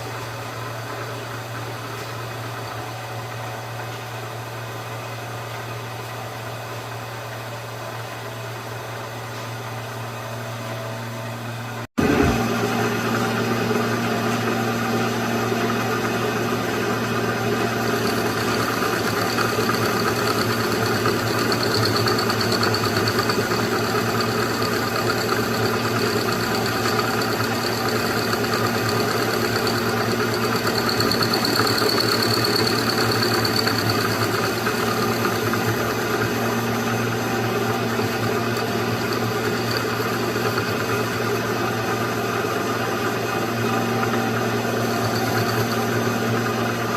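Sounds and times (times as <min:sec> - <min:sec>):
high whine of cutter: 0:12.0 - 0:46.9
milling machine motor hum: 0:12.0 - 0:46.9.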